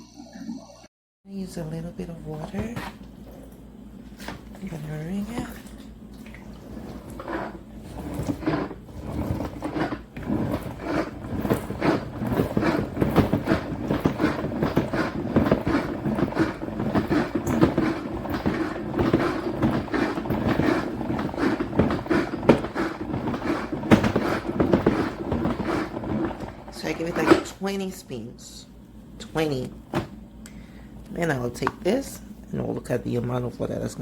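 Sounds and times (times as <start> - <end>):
mop wringer clattering and whirring: 1.5 - 28.6, 29.2 - 30.2
mop bucket pedal pumping: 2.2 - 27.7.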